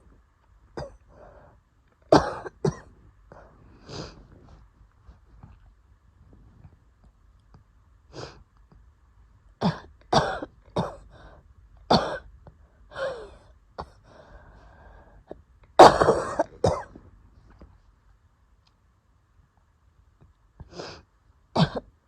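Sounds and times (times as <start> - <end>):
woman coughing harshly: 0.8 - 1.0, 2.1 - 2.9, 9.6 - 11.0, 11.9 - 12.3, 15.8 - 17.0, 21.6 - 21.9
wheezy breath: 3.4 - 4.5, 12.9 - 15.4, 20.6 - 21.1.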